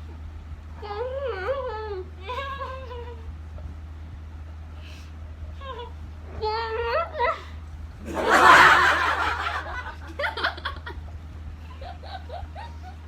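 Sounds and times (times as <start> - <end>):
young women laughing: 8.0 - 13.0.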